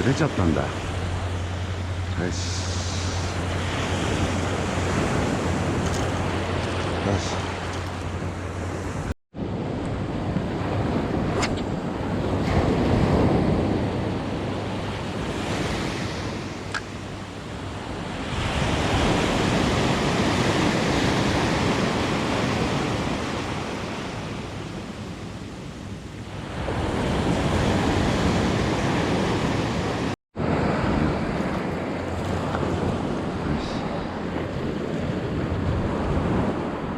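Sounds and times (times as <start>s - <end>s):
surf breaking on a beach: 0.0s - 36.9s
wind buffeting microphone: 0.0s - 36.9s.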